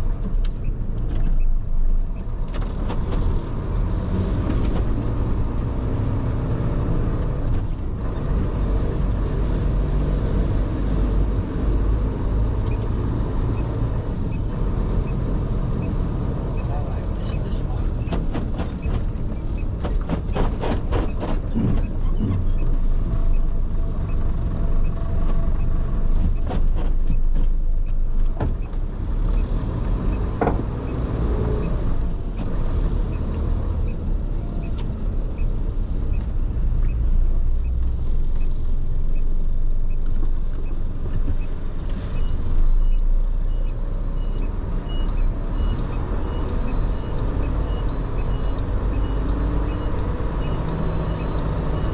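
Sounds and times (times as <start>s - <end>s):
truck engine and road rumble: 0.0s - 51.9s
high electronic beep: 42.2s - 51.9s.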